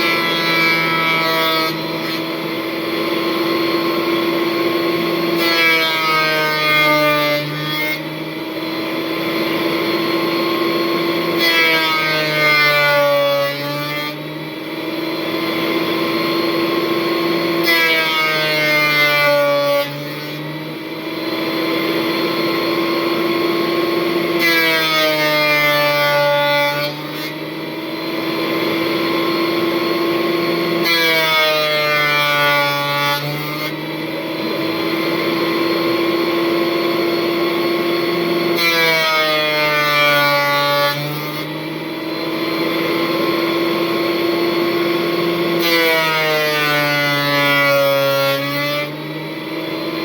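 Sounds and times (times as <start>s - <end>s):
thickness planer cutting wood: 0.0s - 50.0s.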